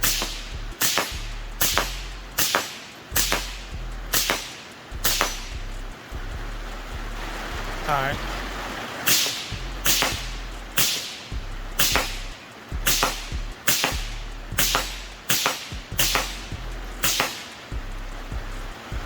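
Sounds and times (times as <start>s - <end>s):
rifle shots: 0.0s - 5.5s, 9.1s - 17.7s
fainter echo crack: 0.0s - 6.0s, 8.9s - 17.8s.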